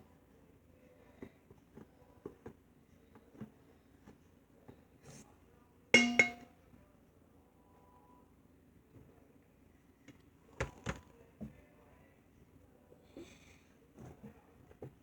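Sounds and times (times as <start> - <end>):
utensil clinking against bowl: 6.0 - 6.4.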